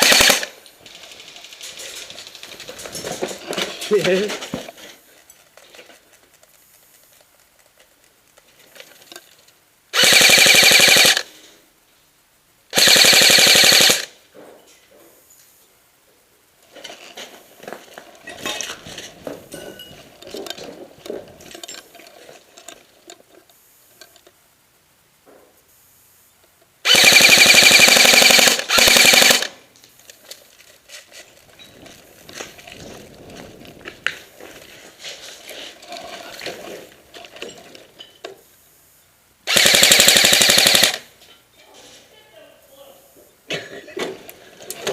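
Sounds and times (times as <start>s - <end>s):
airsoft gun firing bursts: 0.0s - 0.6s, 10.0s - 11.3s, 12.7s - 14.2s, 26.8s - 29.6s, 39.5s - 41.1s
rustling and scuffling: 0.6s - 9.7s, 14.2s - 26.8s, 29.6s - 39.2s, 41.1s - 44.9s.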